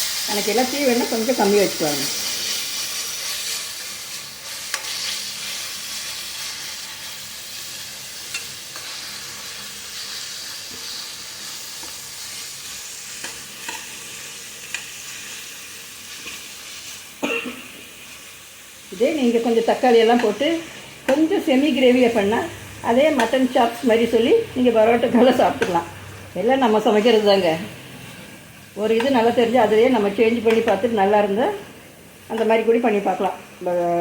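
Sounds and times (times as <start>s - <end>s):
food sizzling in hot oil: 0.0s - 34.0s
spatula ticking and scraping: 4.4s - 5.6s, 13.1s - 14.0s, 20.1s - 21.4s, 23.1s - 23.5s, 28.0s - 31.2s.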